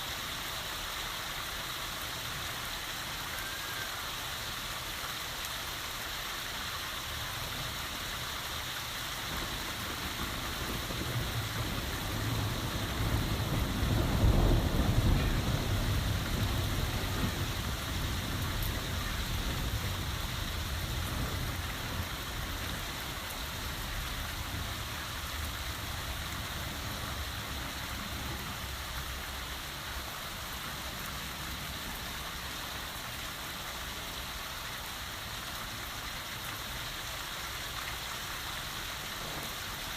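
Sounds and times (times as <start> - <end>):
heavy rain falling: 0.0 - 39.9
deep roll of thunder: 9.2 - 28.4.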